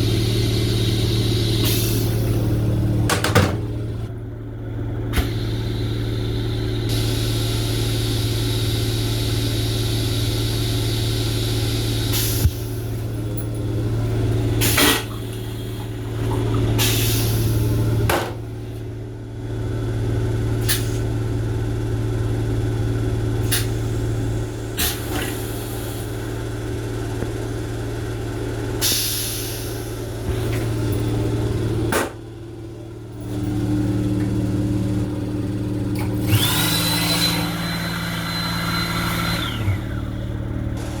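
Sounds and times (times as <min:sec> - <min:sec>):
railcar low hum: 0:00.0 - 0:36.5
sharp clicks and knocks: 0:03.1 - 0:03.7.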